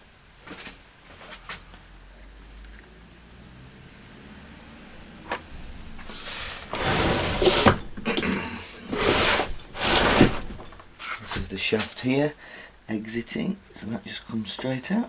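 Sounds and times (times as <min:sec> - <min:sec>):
metal parts scraping and rattling: 0:05.4 - 0:12.0.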